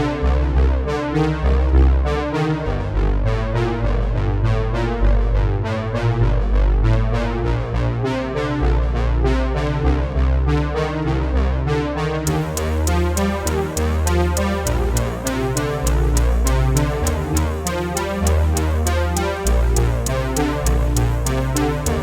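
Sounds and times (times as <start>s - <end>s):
synthesizer and electric piano: 0.0s - 22.0s
steady beat: 12.3s - 22.0s.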